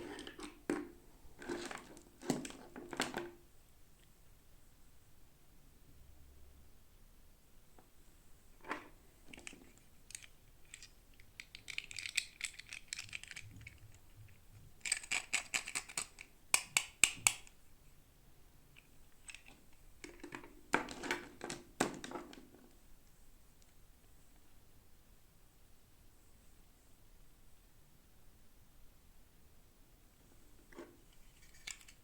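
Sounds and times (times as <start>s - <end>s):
plastic packaging clicks and crinkles: 9.3s - 17.5s.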